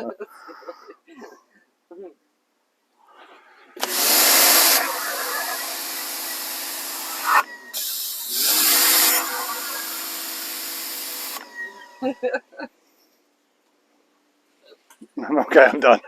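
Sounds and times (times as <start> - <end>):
pressure washer water jet hissing: 3.8 - 11.8
pump humming: 3.8 - 12.2.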